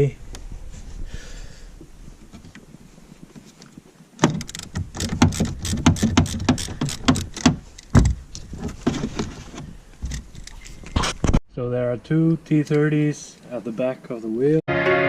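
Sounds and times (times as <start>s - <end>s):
hand tool metallic clicks and clanks: 4.3s - 8.0s.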